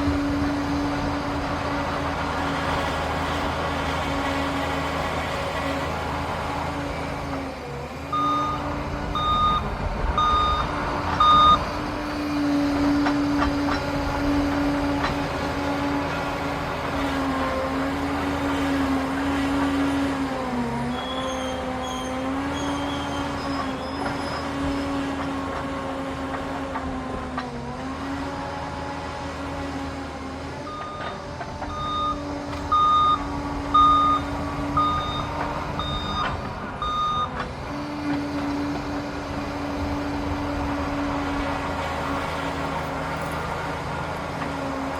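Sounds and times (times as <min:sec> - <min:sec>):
diesel engine under load: 0:00.0 - 0:44.9
reversing alarm beeps: 0:08.1 - 0:11.7, 0:30.7 - 0:37.4.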